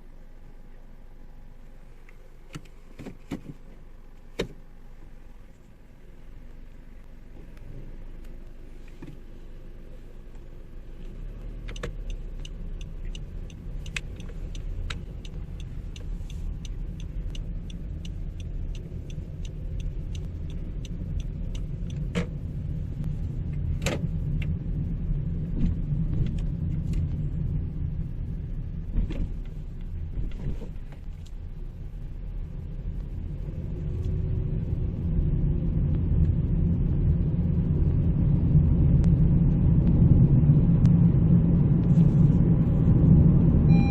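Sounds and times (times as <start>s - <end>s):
car engine and road rumble: 0.0s - 43.9s
regular ticks: 11.0s - 22.3s.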